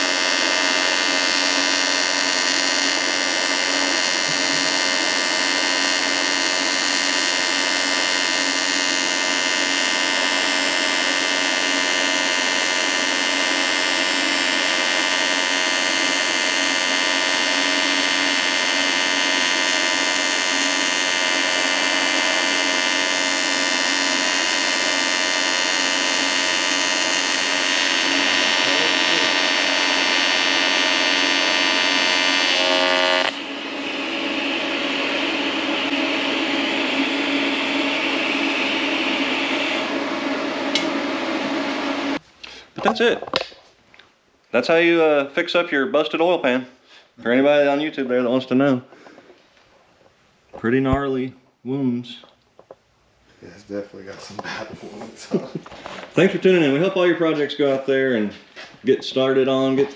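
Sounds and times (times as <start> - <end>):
electrical buzz: 0.0 - 43.4.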